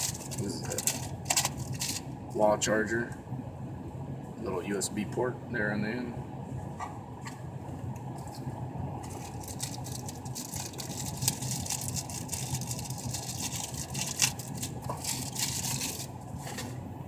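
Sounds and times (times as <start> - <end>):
plastic packaging crinkling: 0.0 - 2.0, 9.0 - 16.2
steady low hum: 0.0 - 17.0.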